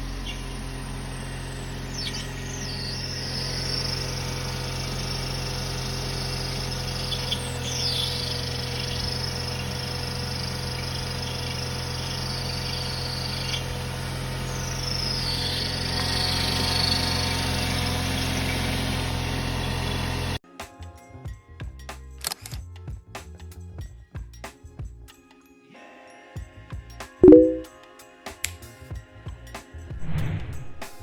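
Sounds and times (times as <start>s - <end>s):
car engine running: 0.0s - 20.4s
high-pitched pulley whine: 0.0s - 20.4s.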